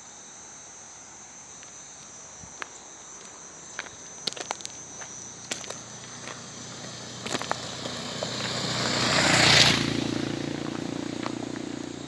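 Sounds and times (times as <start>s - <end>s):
insects chirring: 0.0s - 12.0s
footsteps: 1.6s - 8.6s
low engine hum: 4.8s - 12.0s.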